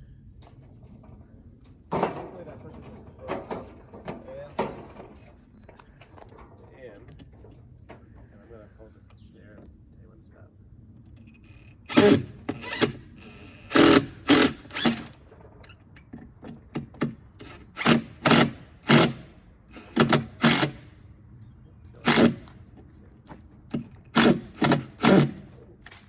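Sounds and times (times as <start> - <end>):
power screwdriver driving screw: 11.6 - 15.2, 17.4 - 20.8, 22.0 - 22.5, 24.2 - 25.4.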